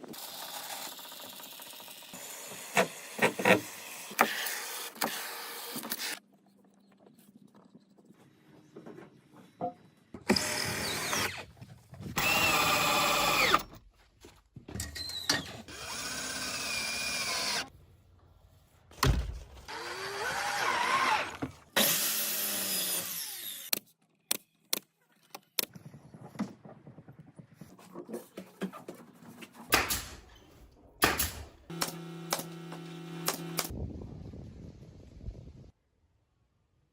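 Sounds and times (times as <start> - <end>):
power drill running: 10.3 - 11.4, 12.2 - 13.6, 15.7 - 17.7, 19.7 - 23.7.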